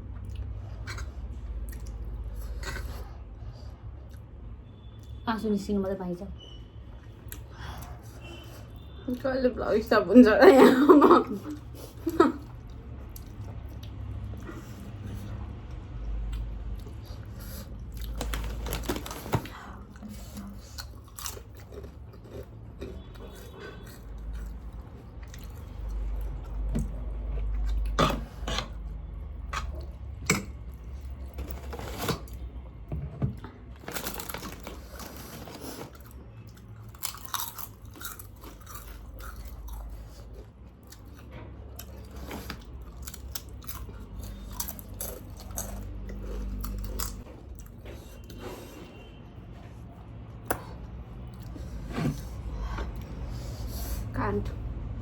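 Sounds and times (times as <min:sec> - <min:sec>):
person chewing crunchy food: 0:16.3 - 0:32.5, 0:33.3 - 0:49.1.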